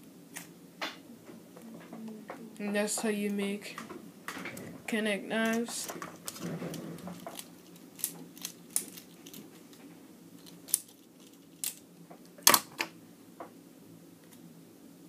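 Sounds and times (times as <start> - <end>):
plastic toy pieces clicking: 5.4 - 9.4.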